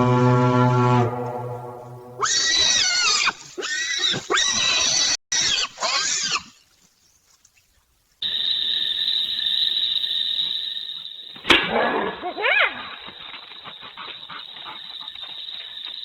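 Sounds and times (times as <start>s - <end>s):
steady high whine: 0.0s - 2.3s.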